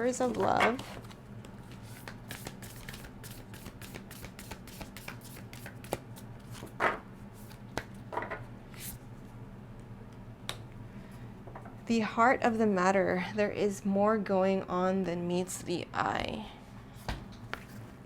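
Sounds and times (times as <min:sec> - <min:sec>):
cards being shuffled: 0:00.2 - 0:06.8.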